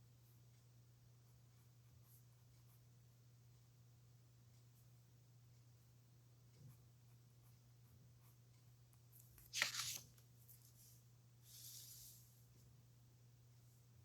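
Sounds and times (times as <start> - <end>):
low electrical hum: 0.0 - 14.0
paper crackling: 9.2 - 10.7
paper brushing swish: 9.5 - 10.1.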